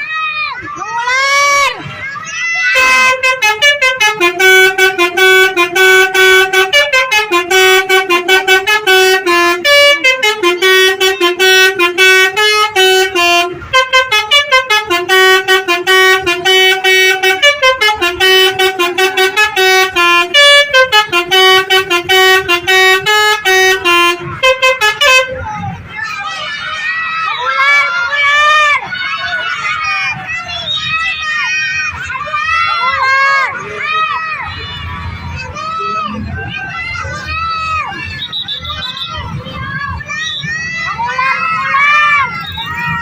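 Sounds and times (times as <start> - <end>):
musical bus horn melody: 2.7 - 25.4.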